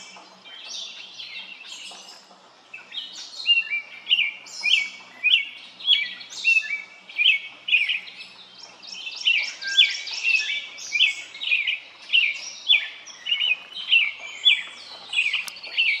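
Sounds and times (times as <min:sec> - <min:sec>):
birds chirping: 0:00.0 - 0:16.0.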